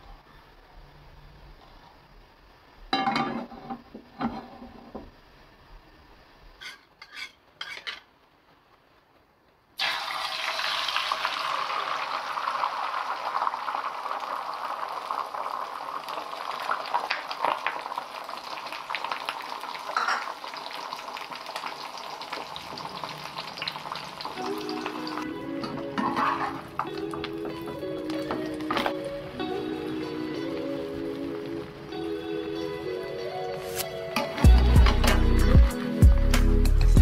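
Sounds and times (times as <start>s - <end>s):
food sizzling in hot oil: 9.8s - 36.2s.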